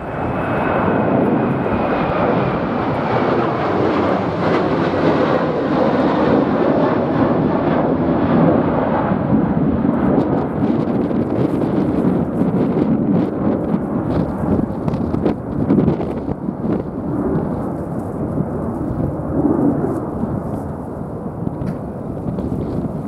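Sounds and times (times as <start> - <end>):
jet engines roaring: 0.0 - 23.0.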